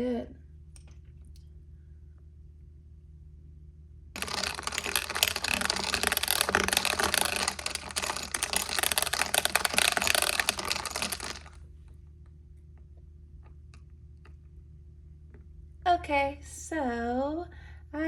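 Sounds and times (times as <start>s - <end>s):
fast typing on keyboard: 4.2s - 11.6s.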